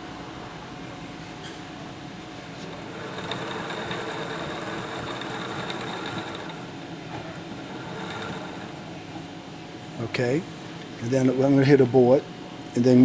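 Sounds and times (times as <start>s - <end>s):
winding machine whirring: 2.3s - 9.4s.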